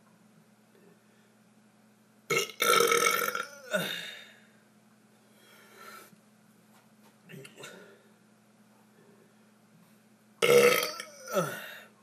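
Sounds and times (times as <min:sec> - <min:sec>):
person burping: 0:02.3 - 0:04.2, 0:10.4 - 0:11.9.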